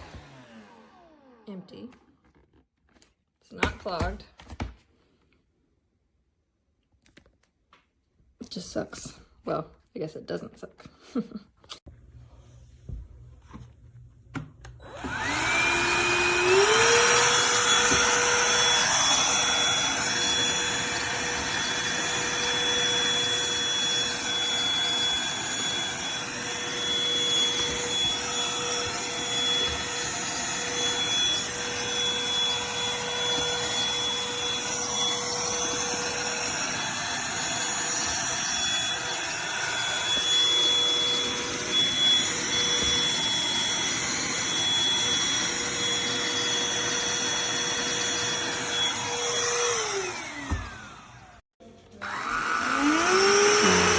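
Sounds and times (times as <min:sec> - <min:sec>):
handheld vacuum motor whine: 0:00.0 - 0:02.5, 0:14.7 - 0:51.4, 0:52.0 - 0:53.9.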